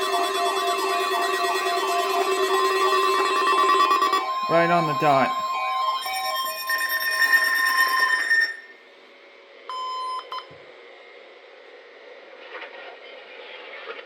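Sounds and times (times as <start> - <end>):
short beep: 0.0 - 8.6
rapidly pulsing beep: 0.0 - 8.7
steady alarm tone: 0.0 - 8.8.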